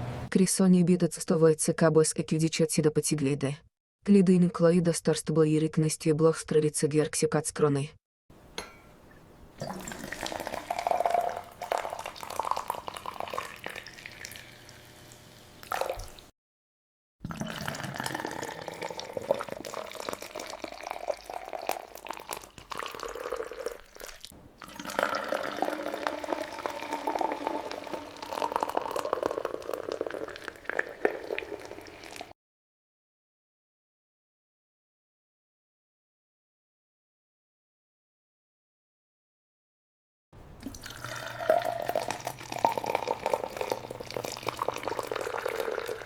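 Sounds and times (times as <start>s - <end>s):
liquid splashing and dripping: 9.6s - 16.3s.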